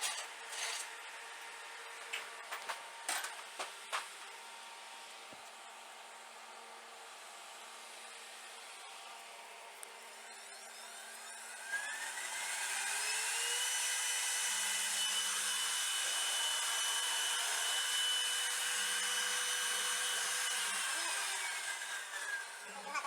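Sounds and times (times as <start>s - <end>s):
power tool motor whining: 9.8s - 23.0s.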